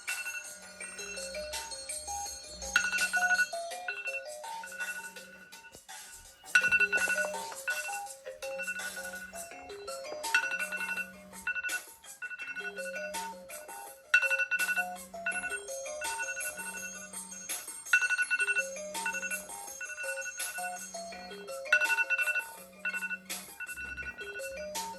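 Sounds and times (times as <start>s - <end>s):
electronic alarm tones: 6.5s - 12.9s, 21.8s - 24.9s.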